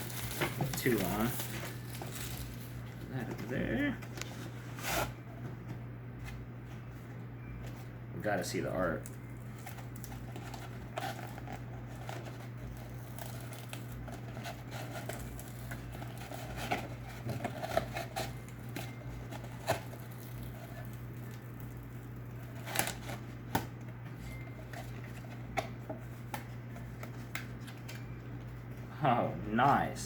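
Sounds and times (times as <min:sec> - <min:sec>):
cardboard rustling and scraping: 0:00.0 - 0:05.5, 0:10.1 - 0:20.7
steady low hum: 0:00.0 - 0:30.0.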